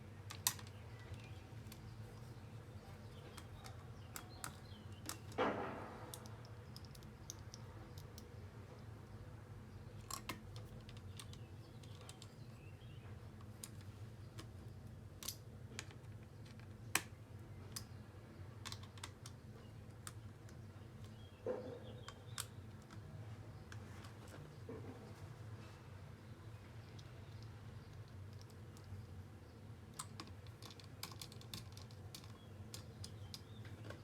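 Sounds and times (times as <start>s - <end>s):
clicks and taps of laptop parts: 10.0s - 12.4s, 18.6s - 21.2s.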